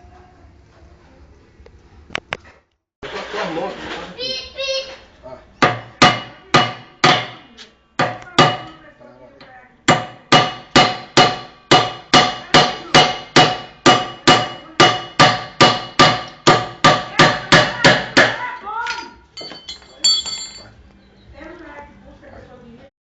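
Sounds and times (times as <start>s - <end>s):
hammer ringing on metal: 9.9s - 18.4s.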